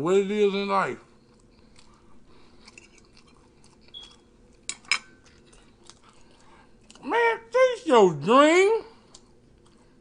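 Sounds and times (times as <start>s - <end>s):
cutlery scraping on plate: 2.7s - 3.4s, 4.7s - 5.2s.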